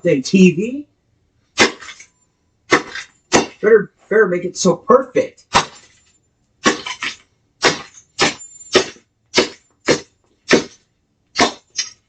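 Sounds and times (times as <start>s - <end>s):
golf club smashing plastic clock: 5.5s - 6.0s, 6.6s - 12.0s.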